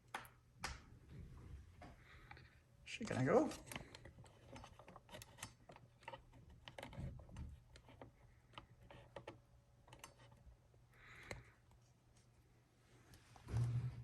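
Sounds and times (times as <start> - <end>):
faint clicks and taps: 1.8 - 12.3.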